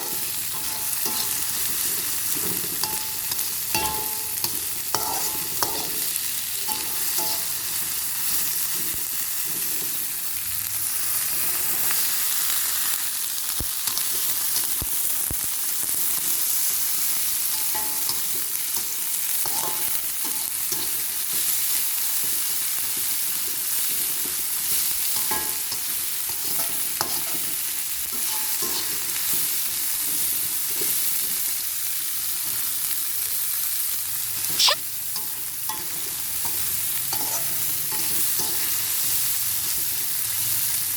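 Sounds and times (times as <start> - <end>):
spatula scraping a pan: 0.0 - 7.8
food sizzling in hot oil: 0.0 - 40.9.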